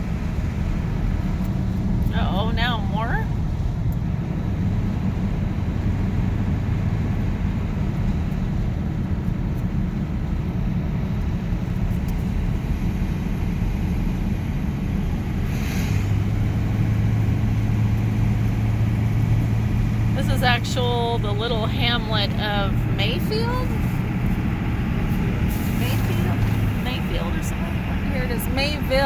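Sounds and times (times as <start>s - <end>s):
car engine and road rumble: 0.0s - 29.0s
deep hum: 0.0s - 29.0s
brief hiss: 15.4s - 16.2s.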